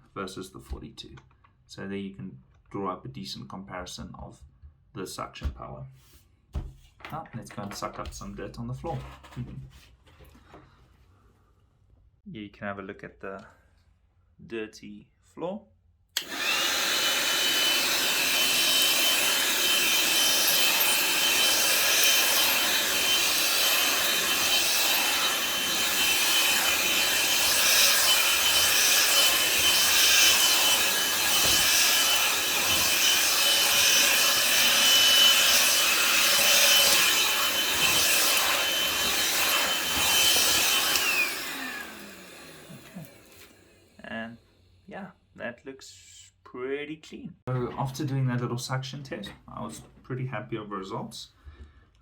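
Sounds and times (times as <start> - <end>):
nozzle scraping carpet: 16.2 - 43.6
handheld vacuum cleaner whining: 16.2 - 44.0.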